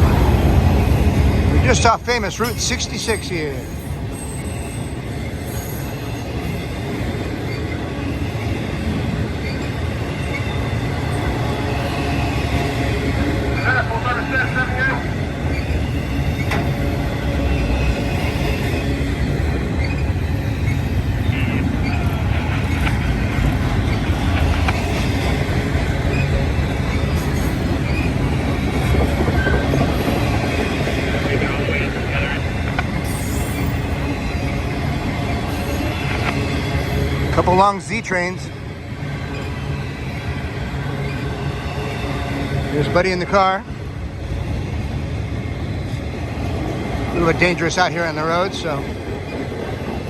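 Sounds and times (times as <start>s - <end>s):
freight train wheels rumbling: 0.0s - 50.0s
high wheel squeal: 0.7s - 14.6s, 15.5s - 34.7s.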